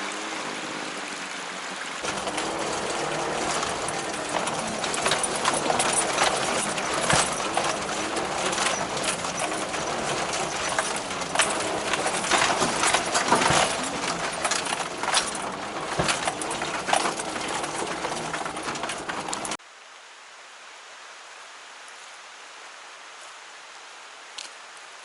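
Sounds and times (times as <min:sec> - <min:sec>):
stream rushing: 0:00.0 - 0:25.0
clacks and knocks: 0:02.0 - 0:19.6.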